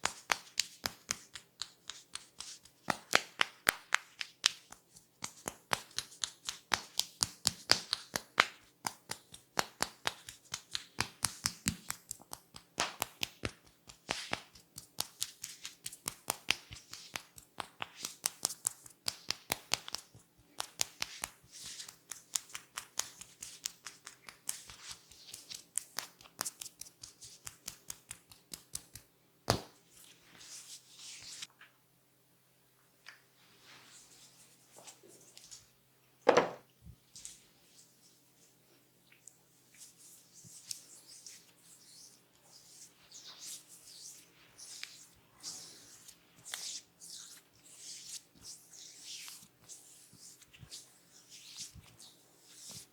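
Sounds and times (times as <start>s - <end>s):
slaps and taps on head: 0.0s - 29.8s.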